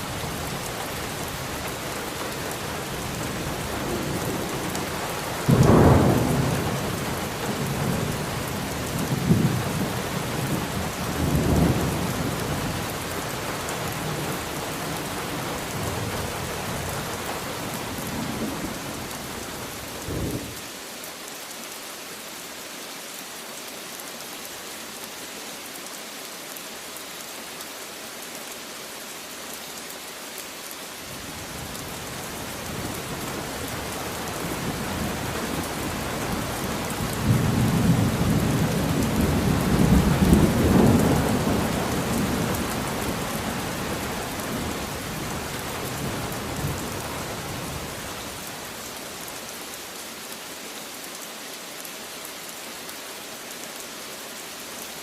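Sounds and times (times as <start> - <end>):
rain hissing: 0.0 - 55.0
rolling thunder: 5.4 - 8.2.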